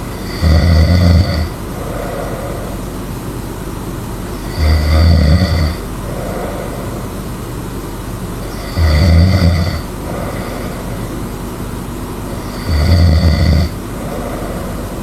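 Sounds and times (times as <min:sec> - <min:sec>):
person snoring loudly: 0:00.0 - 0:02.9, 0:04.3 - 0:07.3, 0:08.4 - 0:11.2, 0:12.3 - 0:15.0
steady background noise: 0:00.0 - 0:15.0.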